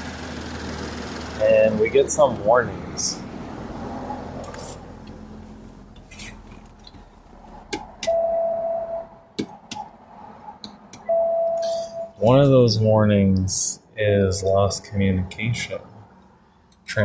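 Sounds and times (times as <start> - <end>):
car warning chime: 8.0 - 9.2, 11.0 - 12.2.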